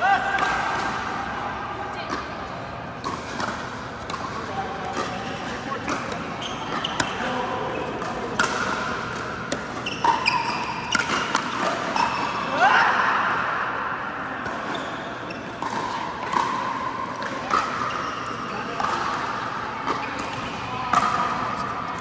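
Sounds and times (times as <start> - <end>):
sneakers squeaking on court: 3.7 - 7.8, 8.5 - 11.2, 14.6 - 15.7.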